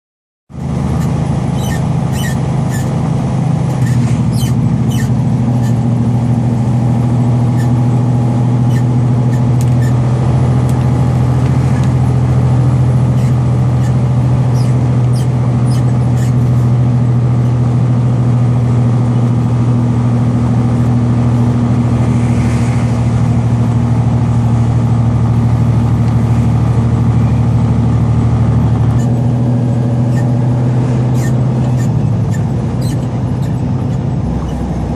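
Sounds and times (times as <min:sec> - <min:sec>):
truck diesel engine droning: 0:00.5 - 0:34.9
sharp clicks and squeaks: 0:00.9 - 0:03.0, 0:03.7 - 0:05.9, 0:07.5 - 0:07.9, 0:08.6 - 0:16.7, 0:28.8 - 0:34.9.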